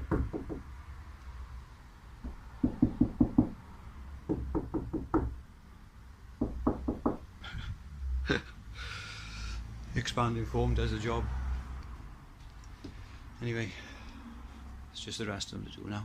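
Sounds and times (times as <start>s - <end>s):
knuckles knocking on metal panel: 2.2s - 3.6s, 4.3s - 5.4s, 6.4s - 7.2s.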